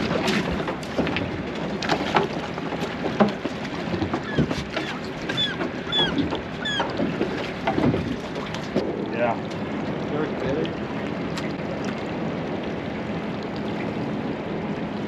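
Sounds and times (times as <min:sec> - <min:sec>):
knocks and clatter on boat deck: 0:00.0 - 0:12.0
water splashing: 0:00.0 - 0:15.0.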